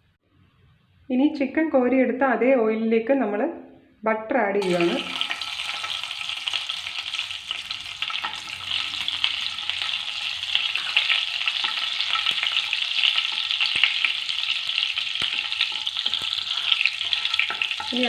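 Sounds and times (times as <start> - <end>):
butter sizzling in a pan: 4.6 - 18.0
small pops and crackles: 10.8 - 18.0.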